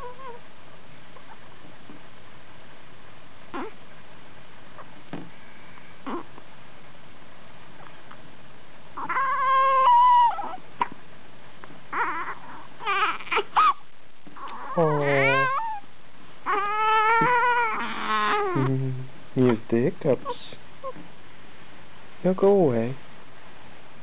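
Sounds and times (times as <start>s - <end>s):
baby fussing and whimpering: 11.9s - 13.8s, 14.4s - 15.8s, 16.4s - 18.9s.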